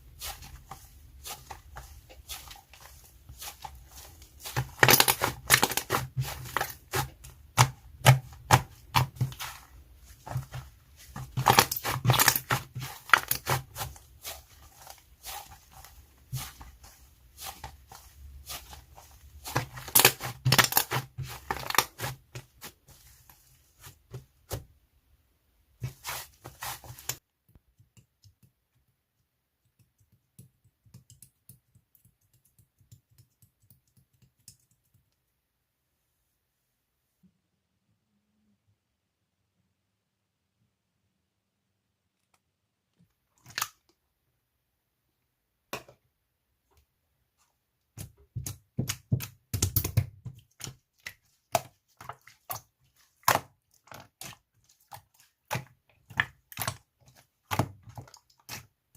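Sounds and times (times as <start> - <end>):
slime crackling and popping: 4.4 - 9.5.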